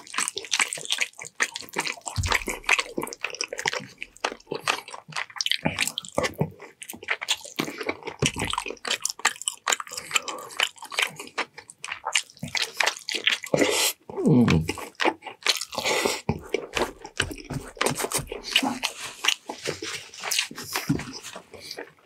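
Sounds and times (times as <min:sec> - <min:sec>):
person chewing and eating: 0:00.0 - 0:22.0.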